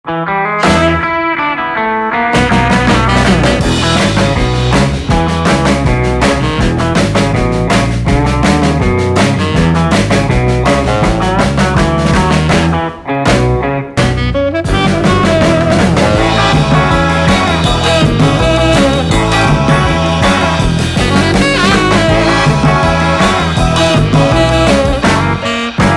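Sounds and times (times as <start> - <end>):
rock music with guitar and drums: 0.1 - 25.9.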